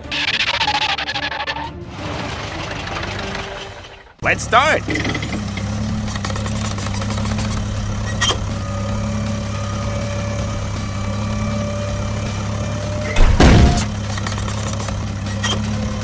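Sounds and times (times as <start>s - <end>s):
vehicle engine humming: 0.0s - 16.0s
loud thud: 13.2s - 13.9s.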